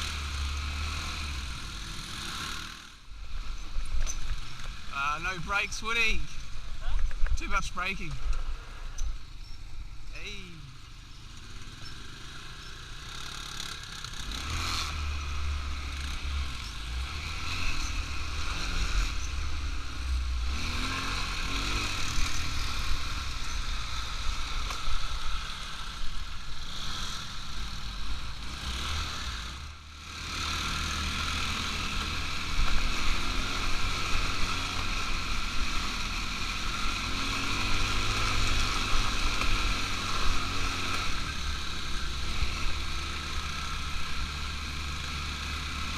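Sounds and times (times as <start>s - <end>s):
atv engine running: 0.0s - 45.9s.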